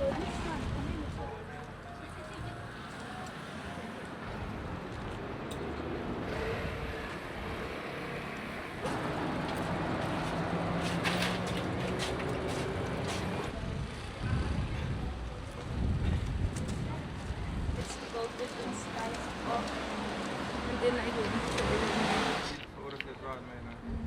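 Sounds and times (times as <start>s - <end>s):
vehicle engine passing by: 2.0s - 15.2s, 18.6s - 22.6s.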